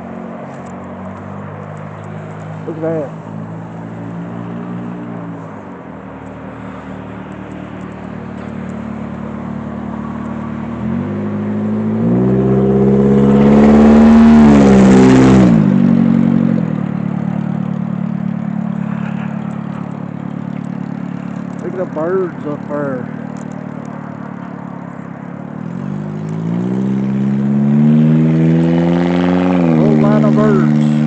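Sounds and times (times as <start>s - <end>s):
car engine running: 0.0s - 31.0s
vehicle accelerating: 0.0s - 31.0s.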